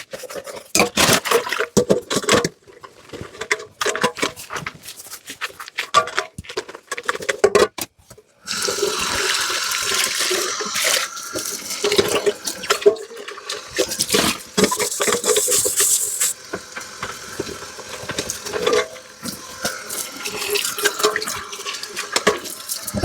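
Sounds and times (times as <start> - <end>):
tap water running into sink: 8.4 - 23.0
dishes clattering in sink: 8.5 - 23.0.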